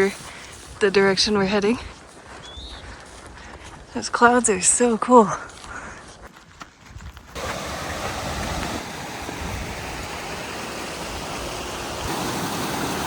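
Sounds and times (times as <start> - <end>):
running water rushing: 7.4 - 13.0.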